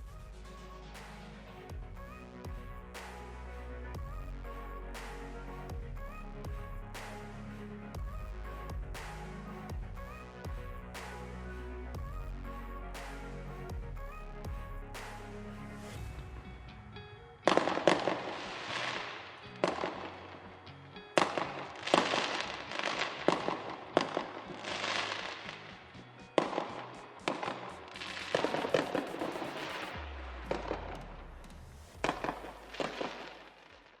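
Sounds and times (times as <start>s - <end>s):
fireworks bangs with crackle: 32.0s - 34.0s.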